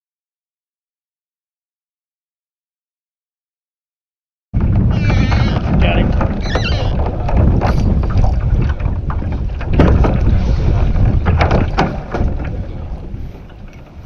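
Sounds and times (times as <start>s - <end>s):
knocks against kayak hull: 4.6s - 12.6s
water lapping: 4.6s - 14.0s
wind buffeting microphone: 4.6s - 14.0s.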